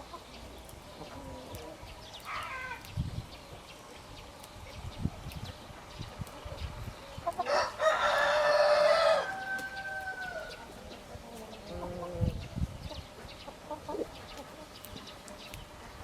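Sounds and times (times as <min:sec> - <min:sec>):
faint chicken sounds: 0:00.0 - 0:16.0
rooster crowing: 0:07.4 - 0:10.7.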